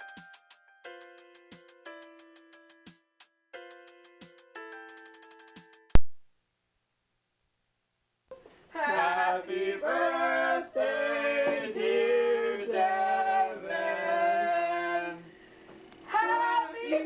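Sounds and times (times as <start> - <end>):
voices singing long notes: 8.8 - 15.3.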